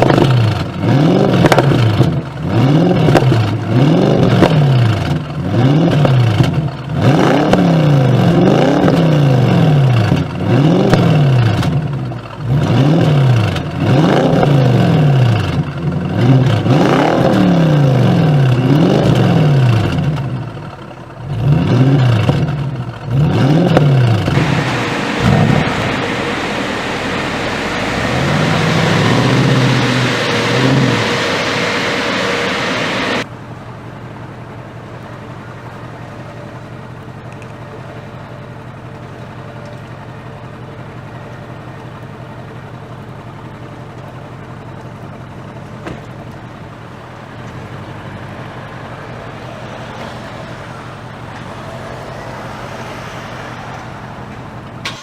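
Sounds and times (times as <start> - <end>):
car engine revving: 0.0 - 33.3, 47.0 - 55.0
car engine idling: 0.0 - 55.0.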